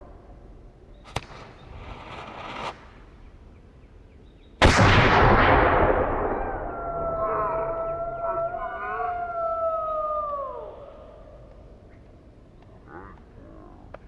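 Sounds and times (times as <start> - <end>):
cannon shot with echo: 4.6 - 8.4.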